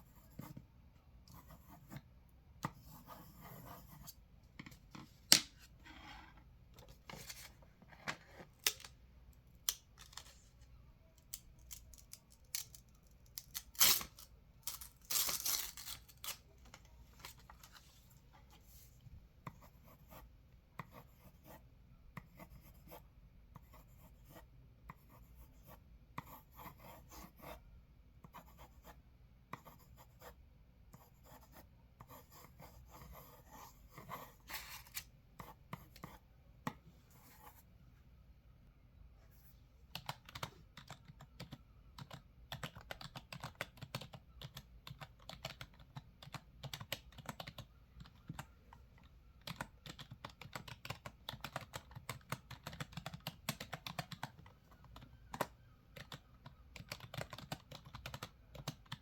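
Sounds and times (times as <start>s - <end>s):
pencil scribbling on paper: 2.7s - 4.2s, 23.6s - 27.6s.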